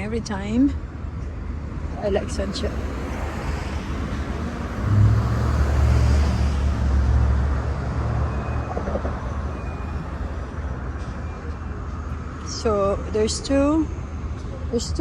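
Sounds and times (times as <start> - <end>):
vehicle passing by: 1.8 - 11.0.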